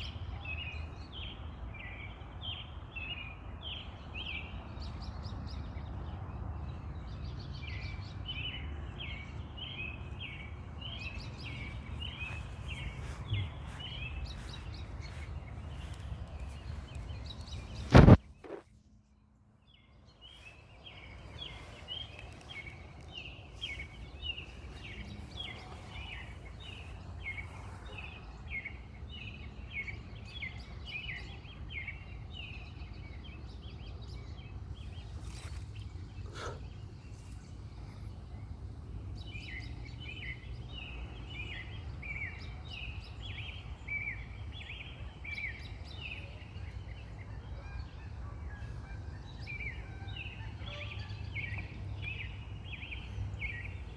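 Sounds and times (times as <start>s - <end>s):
small birds chirping: 0.0s - 53.9s
steady low rumble: 10.1s - 18.7s.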